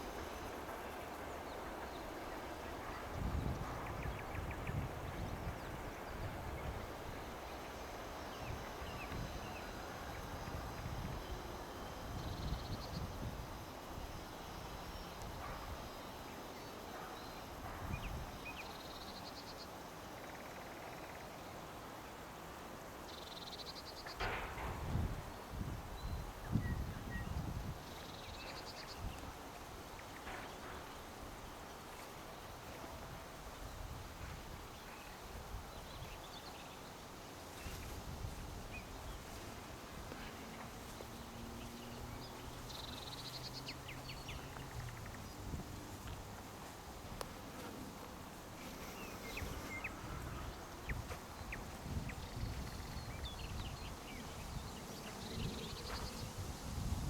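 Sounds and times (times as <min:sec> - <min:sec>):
low outdoor noise: 0:00.0 - 0:57.0.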